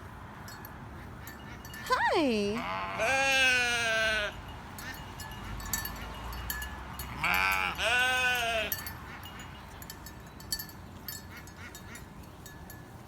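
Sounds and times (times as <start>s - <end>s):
ewe bleating: 2.5s - 4.4s, 7.1s - 8.8s.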